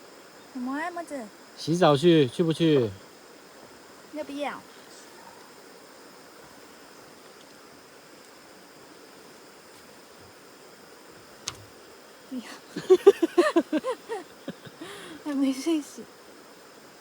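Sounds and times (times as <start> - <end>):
faint background hiss: 0.0 - 17.0
person speaking: 12.3 - 16.0.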